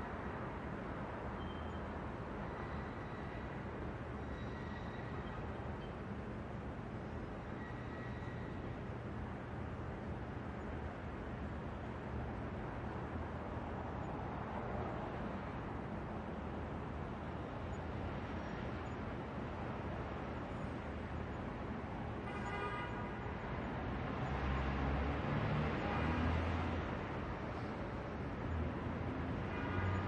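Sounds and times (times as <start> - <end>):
subway station low rumble: 0.0 - 22.2.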